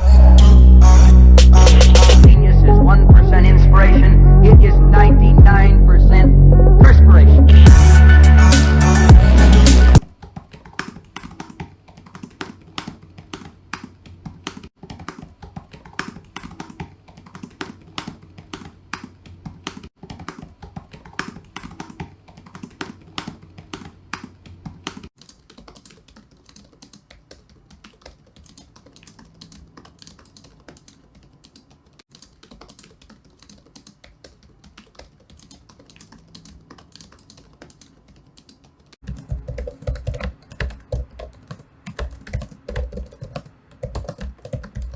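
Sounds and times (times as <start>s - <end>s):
keyboard typing clicks: 10.0s - 44.9s.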